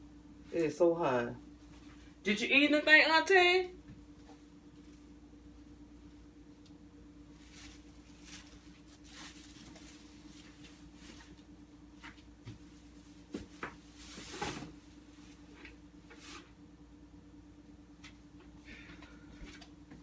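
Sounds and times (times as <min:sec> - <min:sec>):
steady low hum: 0:00.0 - 0:20.0
rustling: 0:07.3 - 0:11.5.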